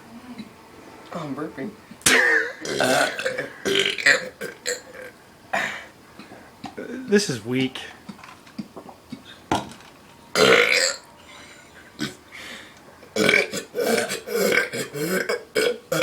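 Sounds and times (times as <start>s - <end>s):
person burping: 2.0s - 5.9s, 10.4s - 11.0s, 12.0s - 12.2s, 13.2s - 16.0s.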